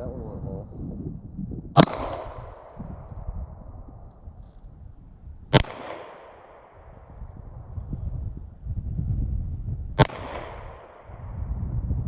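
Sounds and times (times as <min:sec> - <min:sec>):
pistol shot with echo: 0:01.8 - 0:02.8, 0:05.5 - 0:07.2, 0:10.0 - 0:11.3.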